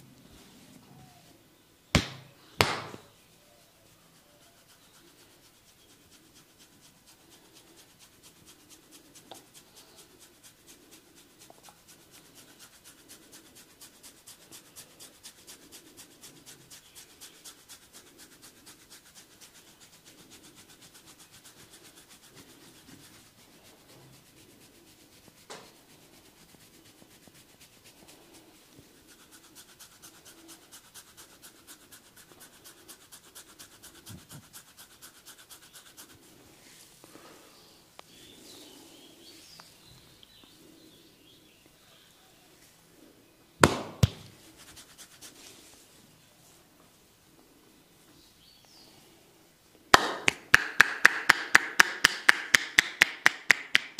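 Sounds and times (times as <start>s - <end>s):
fingers scratching hair: 4.2s - 36.4s, 44.0s - 45.8s.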